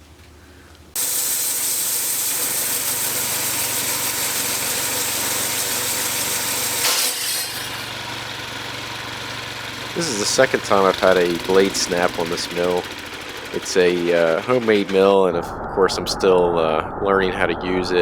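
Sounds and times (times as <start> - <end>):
bandsaw blade cutting log: 1.0 - 15.2
sawmill engine running: 1.0 - 18.0.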